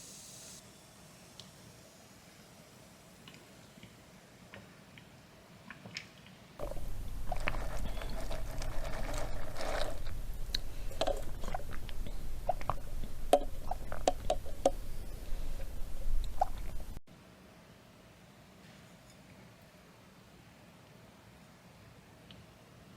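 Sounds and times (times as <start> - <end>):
chewing and crunching food: 5.7 - 17.0
low steady rumble: 6.6 - 17.0.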